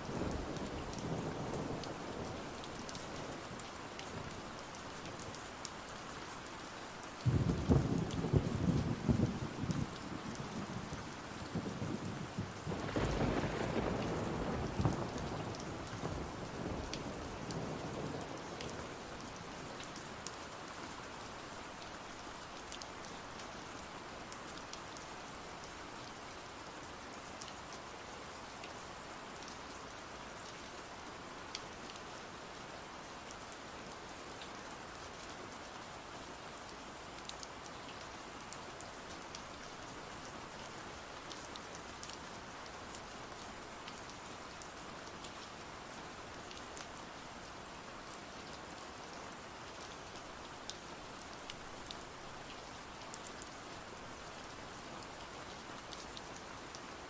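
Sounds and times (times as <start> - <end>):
steady rain falling: 0.0 - 57.0
low thunder rumble: 11.6 - 15.5.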